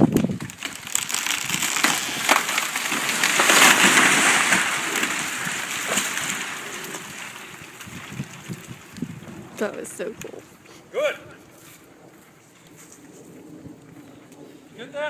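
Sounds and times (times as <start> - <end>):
tree crashing through branches: 0.0 - 10.1
wood cracking and splintering: 0.0 - 10.5.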